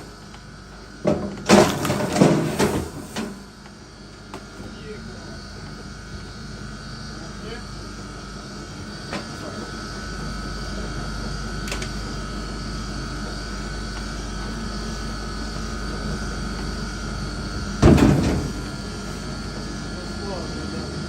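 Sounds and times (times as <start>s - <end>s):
machine hum: 9.8s - 21.0s
heavy thump: 17.8s - 18.7s.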